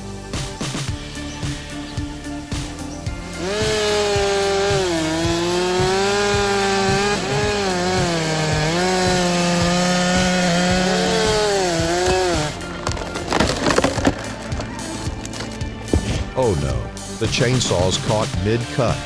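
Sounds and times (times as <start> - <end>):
chainsaw cutting wood: 2.5 - 16.4.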